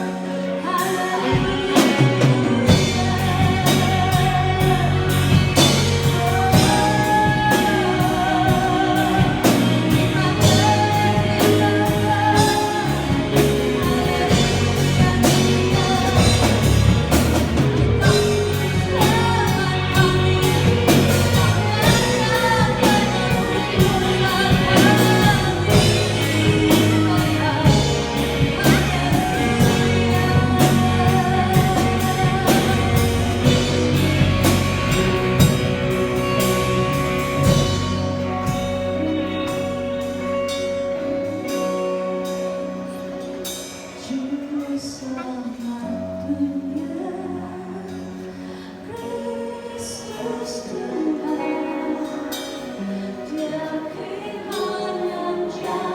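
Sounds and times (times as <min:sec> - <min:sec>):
band playing drums and guitar: 0:00.0 - 0:44.6
person singing: 0:00.0 - 0:55.9.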